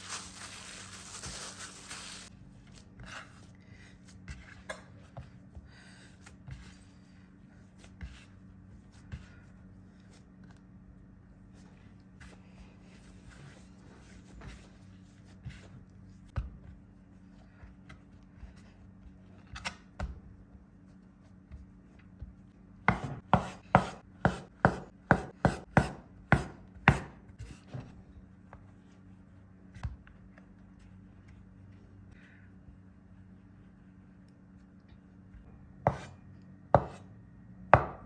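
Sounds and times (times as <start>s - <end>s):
knife chopping potatoes on board: 22.8s - 27.5s, 35.9s - 36.2s, 36.8s - 37.1s, 37.8s - 38.0s.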